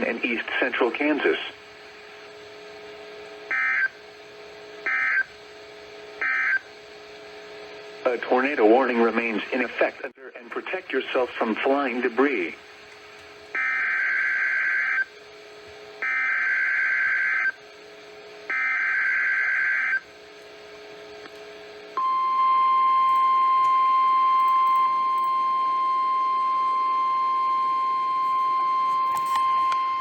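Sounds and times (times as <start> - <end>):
steady warning alarm tone: 2.4 - 5.6, 6.2 - 6.8, 13.5 - 20.2, 22.0 - 30.0.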